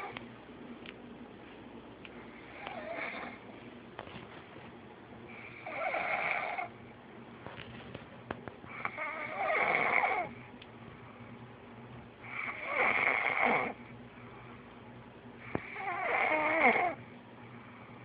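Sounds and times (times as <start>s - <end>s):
quiet breathing: 1.3s - 3.8s, 12.2s - 16.1s, 16.8s - 18.0s
person snoring: 5.6s - 6.7s, 12.3s - 13.8s, 15.6s - 17.0s.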